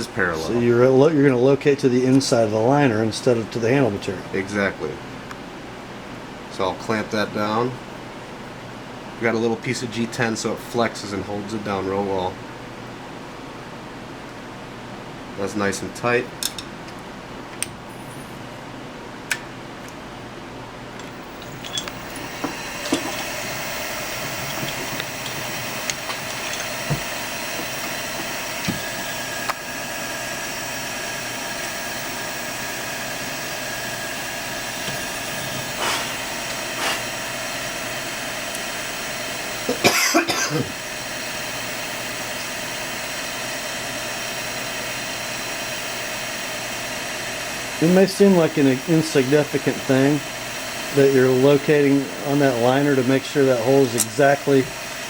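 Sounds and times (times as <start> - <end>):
milling machine spindle humming: 21.0 - 55.0.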